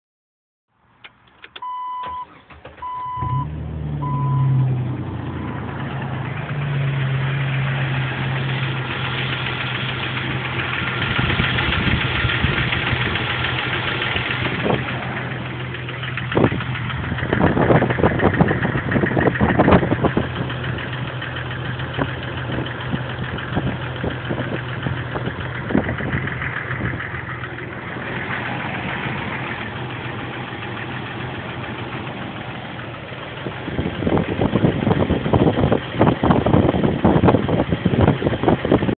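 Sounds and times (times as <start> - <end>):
engine cranking and idling: 1.0 - 38.9
short beeps: 1.6 - 4.6.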